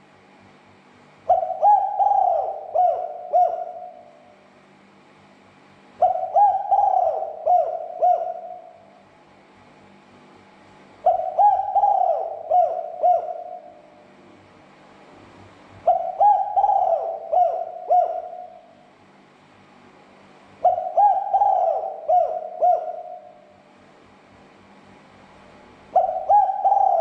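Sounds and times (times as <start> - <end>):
dove cooing: 1.3 - 4.3, 6.0 - 9.0, 11.0 - 14.2, 15.8 - 18.8, 20.6 - 23.6, 25.9 - 27.0.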